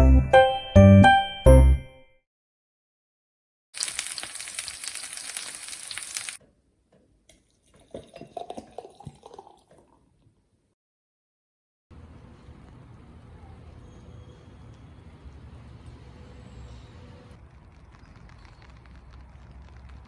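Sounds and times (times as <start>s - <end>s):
food sizzling in frying pan: 3.8s - 6.4s.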